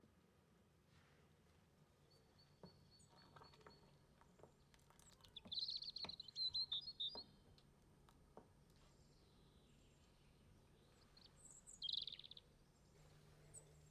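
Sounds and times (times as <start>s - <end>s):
small bird chirping: 5.0s - 7.4s, 10.8s - 12.5s.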